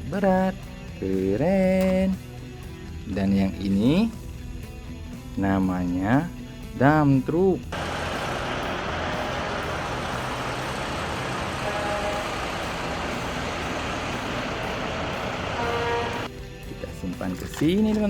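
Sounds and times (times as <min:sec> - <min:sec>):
truck engine running: 0:07.7 - 0:16.4.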